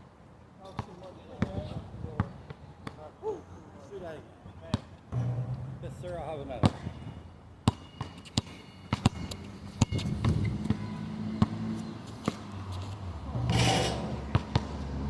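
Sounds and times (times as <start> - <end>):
sharp knocks: 5.1 - 5.9.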